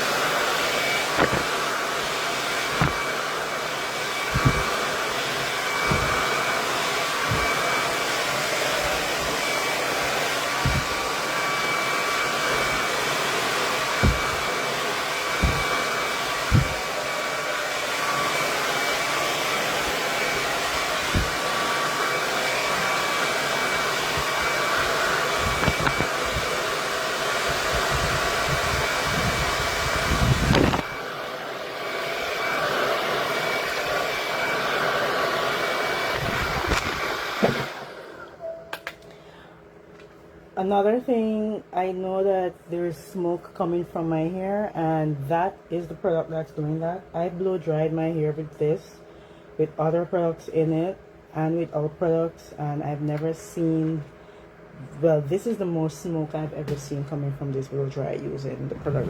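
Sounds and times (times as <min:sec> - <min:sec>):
hair dryer blowing: 0:00.0 - 0:40.6, 0:49.4 - 0:59.0
low thumps: 0:04.3 - 0:04.8, 0:05.8 - 0:06.3, 0:10.6 - 0:11.1, 0:13.9 - 0:14.5, 0:15.3 - 0:16.9.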